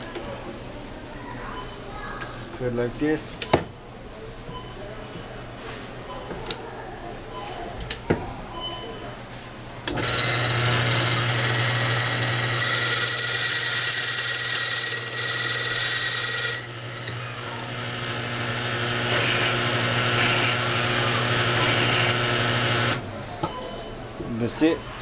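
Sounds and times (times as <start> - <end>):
key cutting machine rasping: 9.9 - 23.0.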